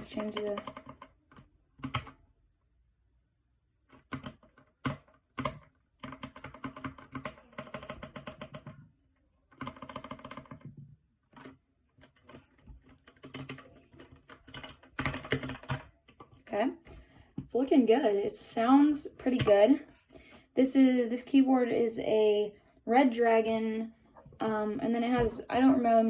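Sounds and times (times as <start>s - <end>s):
mechanical keyboard typing: 0.0s - 2.2s, 3.9s - 8.8s, 9.5s - 16.4s.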